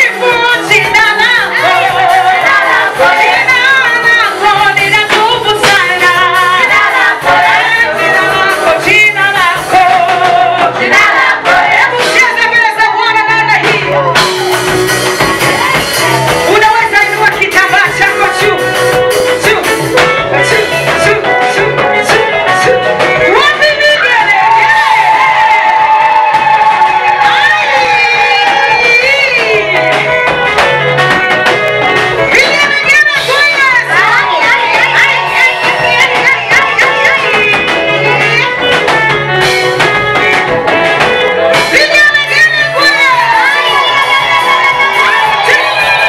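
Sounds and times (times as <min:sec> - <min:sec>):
choir singing: 0:01.4 - 0:04.0, 0:06.1 - 0:12.2.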